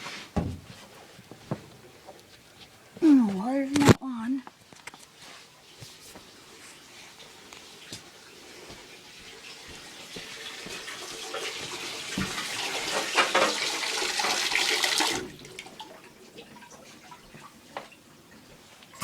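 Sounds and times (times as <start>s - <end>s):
water running from tap: 5.6s - 19.0s.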